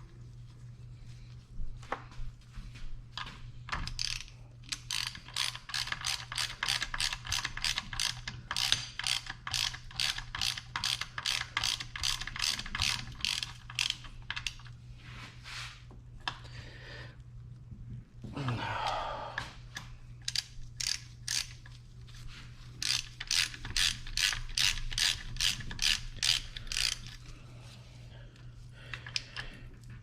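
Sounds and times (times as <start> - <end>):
ratchet wrench clicking: 3.8 - 14.6, 20.2 - 21.7, 22.8 - 27.2.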